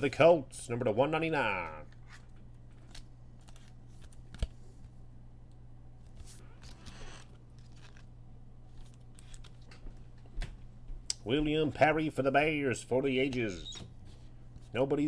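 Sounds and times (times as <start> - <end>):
steady low hum: 0.0 - 15.0
rustle of cards or wrapper: 6.2 - 9.8.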